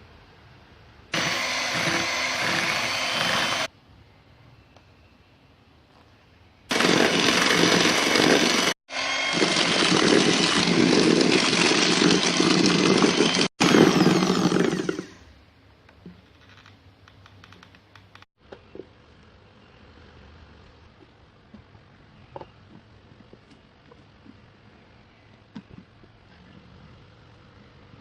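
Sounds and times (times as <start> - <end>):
electric mixer whirring: 1.2 - 3.7, 6.7 - 15.2.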